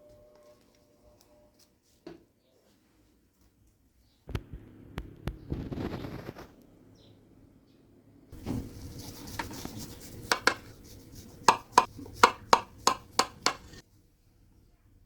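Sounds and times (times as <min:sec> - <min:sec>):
pan knocking against hard surface: 0:09.4 - 0:10.8, 0:11.4 - 0:13.8.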